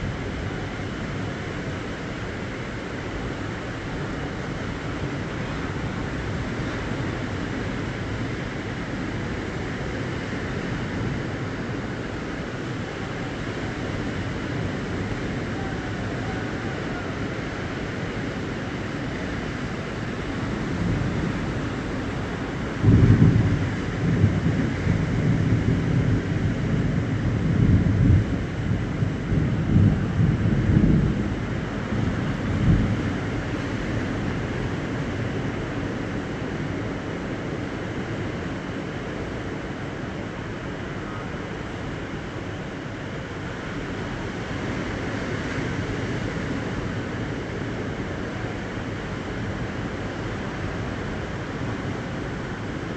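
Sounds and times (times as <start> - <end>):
ocean surf: 0.0 - 52.9
storm rushing noise: 12.9 - 38.0.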